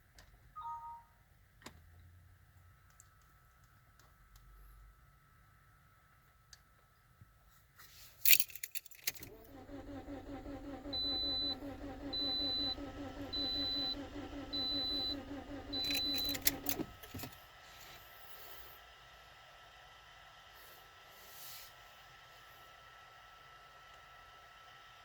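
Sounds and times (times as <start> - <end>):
high beeps: 0.6 - 1.1
keys jangling: 8.2 - 9.3
car engine cranking on starter: 8.3 - 17.5.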